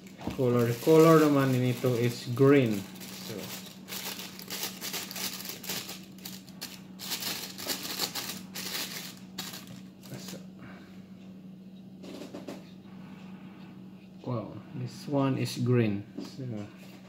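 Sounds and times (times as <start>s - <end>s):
packaging rustling and crinkling: 0.0s - 10.4s
faint steady hum: 0.0s - 17.0s.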